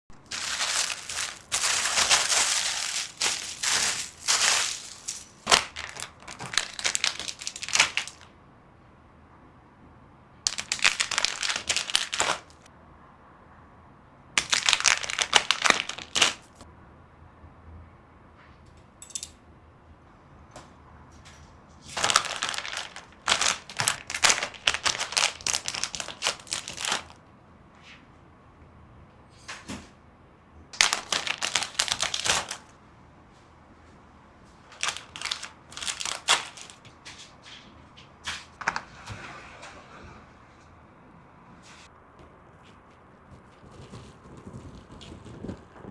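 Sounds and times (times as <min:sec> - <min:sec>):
plastic packaging crinkling: 0:00.1 - 0:08.3, 0:10.5 - 0:12.7, 0:14.4 - 0:16.6, 0:21.9 - 0:27.2, 0:30.8 - 0:32.7, 0:34.7 - 0:36.8.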